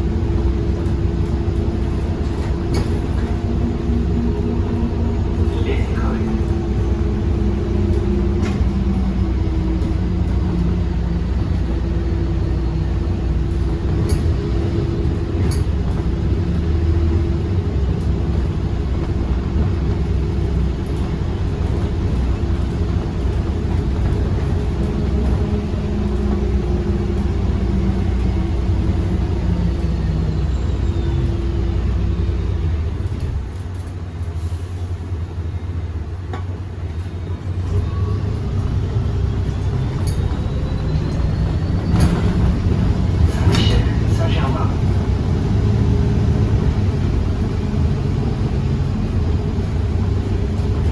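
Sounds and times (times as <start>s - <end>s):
bus engine rumble: 0.0s - 50.9s.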